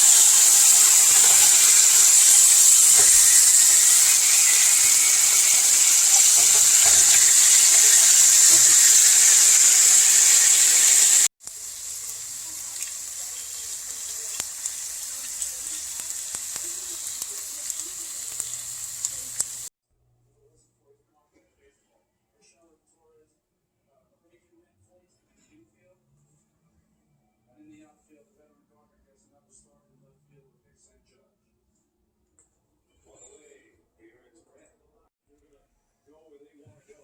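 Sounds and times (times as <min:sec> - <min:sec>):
food sizzling in a hot pan: 0:00.0 - 0:19.7.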